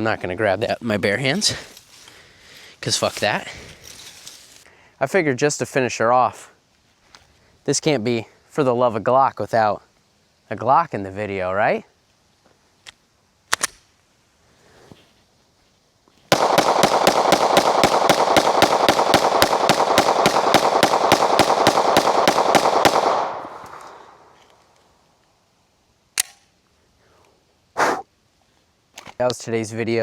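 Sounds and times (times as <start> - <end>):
pistol shots: 16.3 - 24.3
sharp click: 26.2 - 26.5.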